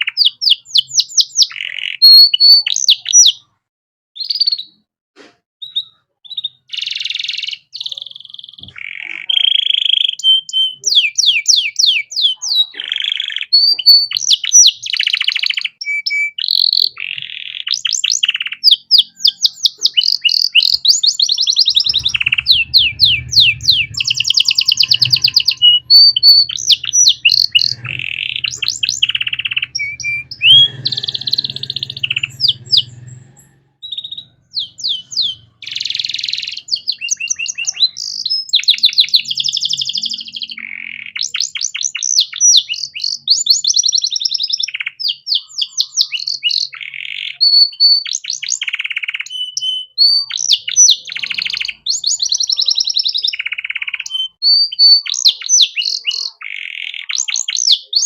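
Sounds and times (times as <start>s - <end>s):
canary singing trills: 0.0s - 3.6s, 4.2s - 4.9s, 5.6s - 58.0s
faint low hum: 21.6s - 35.5s.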